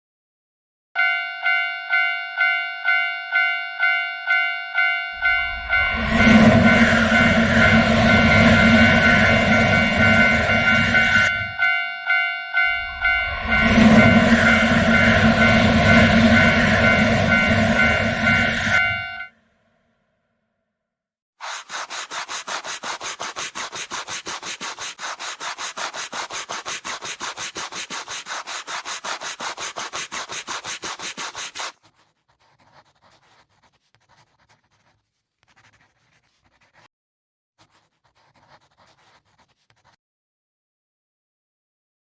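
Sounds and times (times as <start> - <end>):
passing train: 1.4 - 19.4
rapid rubbing scraping: 5.2 - 11.6, 12.7 - 18.9, 21.4 - 32.6
faint scratching: 12.7 - 19.0, 37.6 - 40.0.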